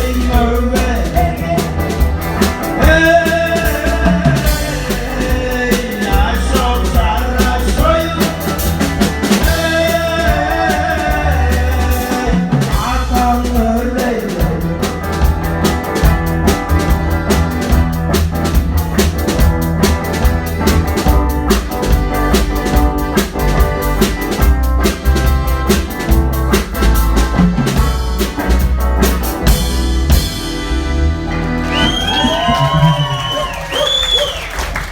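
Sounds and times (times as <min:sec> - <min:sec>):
person singing: 0:00.0 - 0:02.1, 0:02.7 - 0:15.3
live band music: 0:00.0 - 0:34.9.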